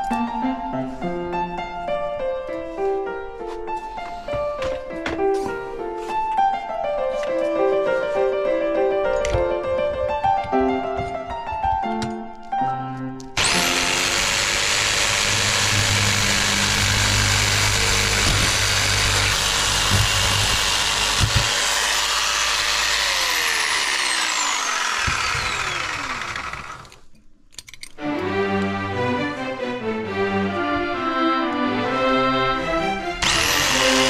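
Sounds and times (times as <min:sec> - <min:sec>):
piano music: 0:00.0 - 0:14.4, 0:28.1 - 0:34.0
power tool whining: 0:13.4 - 0:27.0, 0:33.2 - 0:34.0.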